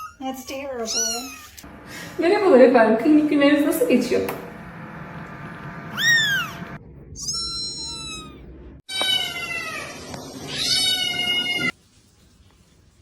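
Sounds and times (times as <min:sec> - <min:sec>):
cat meowing: 0:00.8 - 0:01.6, 0:07.2 - 0:11.7.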